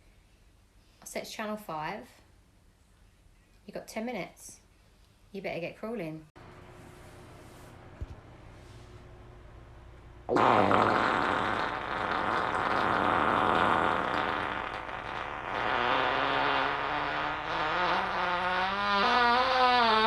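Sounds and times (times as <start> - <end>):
long fart: 10.3 - 20.0.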